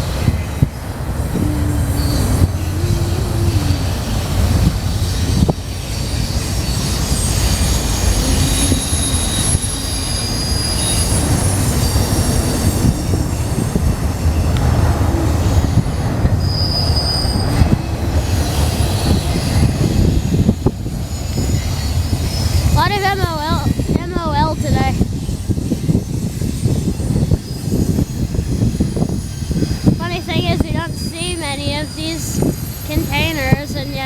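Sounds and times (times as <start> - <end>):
train wheels rumbling on rail: 0.0 - 34.0
high-pitched wheel squeal: 0.7 - 33.8.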